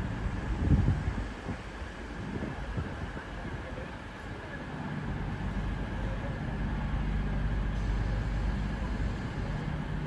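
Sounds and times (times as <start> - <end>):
diesel train engine rumble: 0.0 - 10.0.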